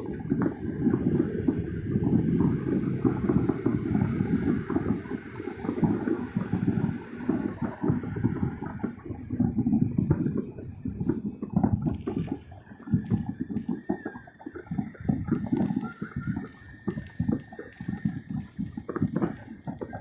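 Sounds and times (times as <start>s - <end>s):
low rumble: 0.0s - 10.5s
distant fireworks booming: 0.0s - 20.0s.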